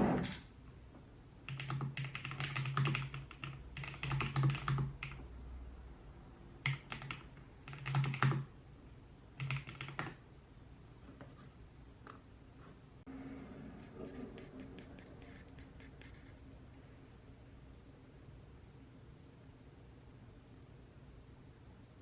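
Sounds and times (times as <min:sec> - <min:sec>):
computer keyboard typing: 0:01.5 - 0:05.3, 0:06.6 - 0:08.5, 0:09.4 - 0:10.2, 0:14.0 - 0:16.3.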